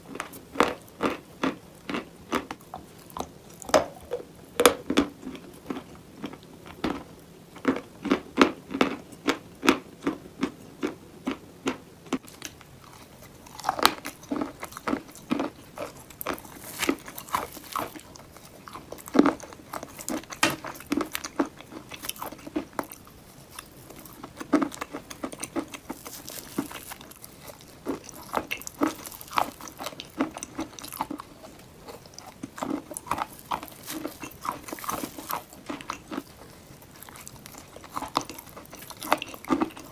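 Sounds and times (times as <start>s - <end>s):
chalk crunching between teeth: 23.5s - 39.9s.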